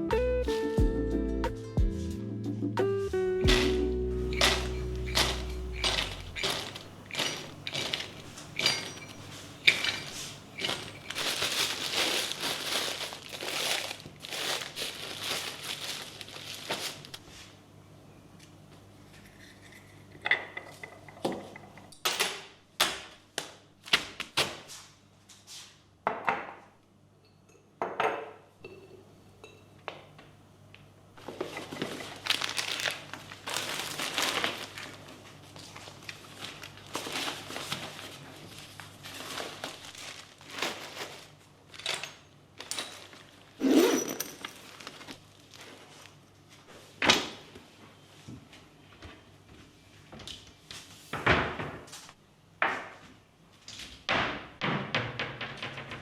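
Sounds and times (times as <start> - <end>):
dishes ringing: 3.5 - 11.3, 28.6 - 29.7
objects set down with knocks: 3.5 - 11.3
rustling and crinkling: 3.5 - 17.6, 31.2 - 51.2.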